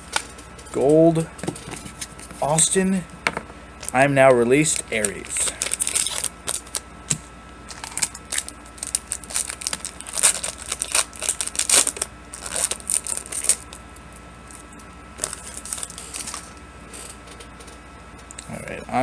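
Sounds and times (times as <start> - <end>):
wrapper tearing and crinkling: 4.6 - 6.9, 7.7 - 13.9, 15.2 - 17.1.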